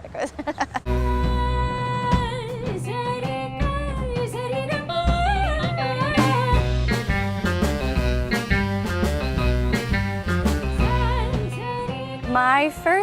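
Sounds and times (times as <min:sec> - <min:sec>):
bass line: 0:00.9 - 0:03.0, 0:04.9 - 0:12.6
band melody with heavy vibrato: 0:00.9 - 0:13.0
staccato notes: 0:05.2 - 0:11.6.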